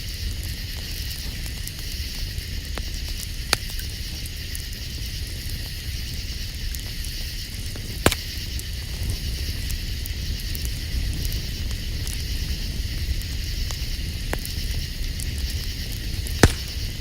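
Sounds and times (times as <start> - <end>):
night insects chirring: 0.0 - 17.0
campfire crackling: 0.1 - 17.0
sharp fire pops: 7.8 - 8.6, 16.2 - 17.0.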